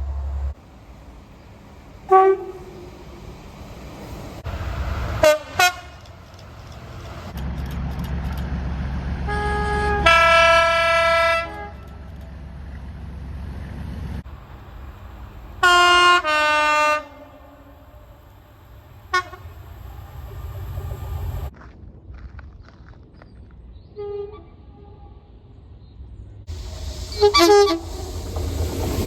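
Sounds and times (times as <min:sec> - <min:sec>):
low rumble of moving train: 0:00.0 - 0:22.4, 0:23.0 - 0:29.0
train horn blasts: 0:02.0 - 0:03.1, 0:05.2 - 0:06.2, 0:09.2 - 0:12.1, 0:15.6 - 0:21.4, 0:27.1 - 0:28.1.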